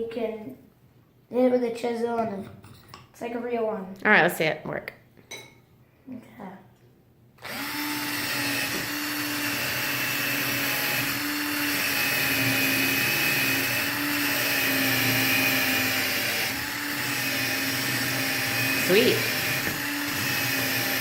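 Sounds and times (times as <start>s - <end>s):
electric drill motor whine: 7.4s - 21.0s.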